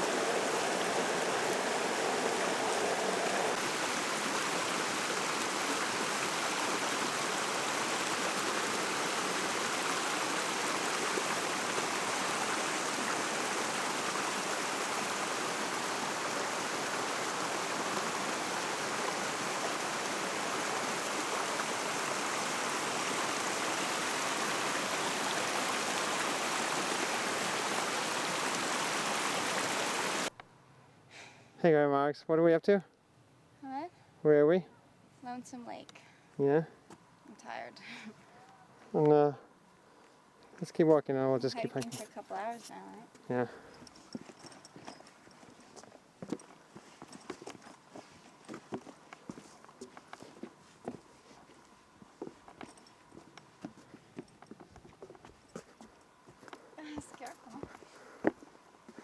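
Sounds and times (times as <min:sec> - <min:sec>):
mountain stream rushing: 0:00.0 - 0:30.3.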